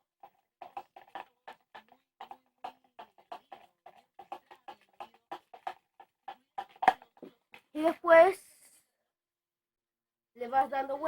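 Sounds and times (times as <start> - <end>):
utensil stirring slime: 0.0 - 8.0.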